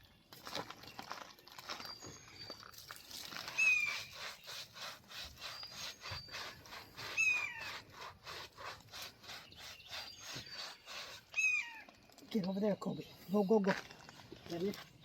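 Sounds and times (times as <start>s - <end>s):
hands rubbing wet dog's coat: 3.3s - 11.4s.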